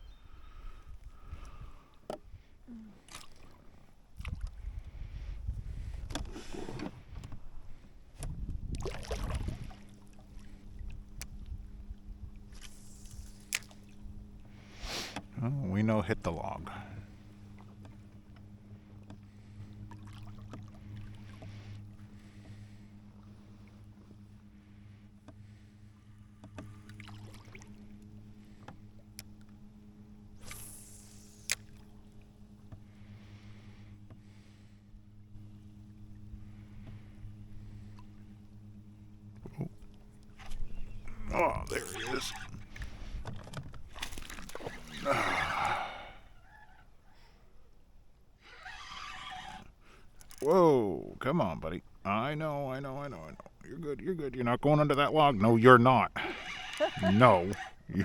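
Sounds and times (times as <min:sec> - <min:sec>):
low rumbling: 0:04.4 - 0:58.0
knocks of handling in boat: 0:05.6 - 0:12.2, 0:17.0 - 0:27.2, 0:42.3 - 0:45.0
electric boat motor humming: 0:09.4 - 0:58.0
fishing gear clicks and knocks: 0:49.5 - 0:50.5.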